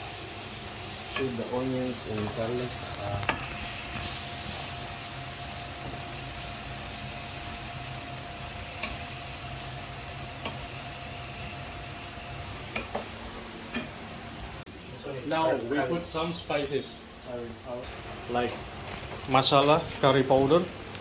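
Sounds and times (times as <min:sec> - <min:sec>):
onions frying in oil: 0:00.0 - 0:21.0
utensil clicking against pan: 0:08.8 - 0:09.1, 0:10.4 - 0:10.6, 0:12.7 - 0:13.1.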